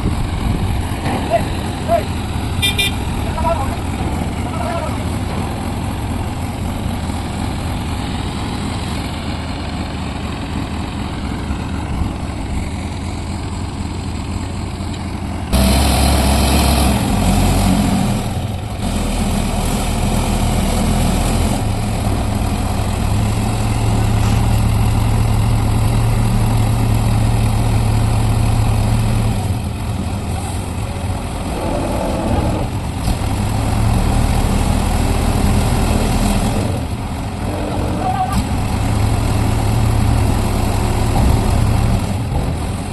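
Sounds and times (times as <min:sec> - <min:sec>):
heavy machine engine revving: 0:15.5 - 0:29.5, 0:31.2 - 0:42.9.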